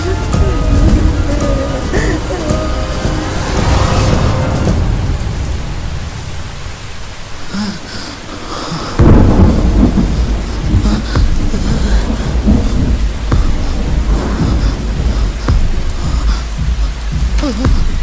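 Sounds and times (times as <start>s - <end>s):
loud thunderclap: 0.0s - 7.6s, 9.0s - 17.4s
rain falling: 0.0s - 18.0s
thunder rumbling: 0.0s - 18.0s.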